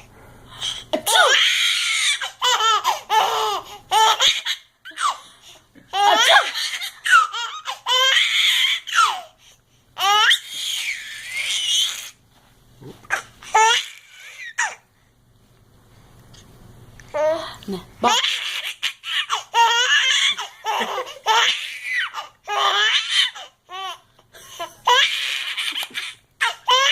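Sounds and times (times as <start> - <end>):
baby laughing: 1.0 - 5.2, 5.8 - 9.3, 18.1 - 26.9.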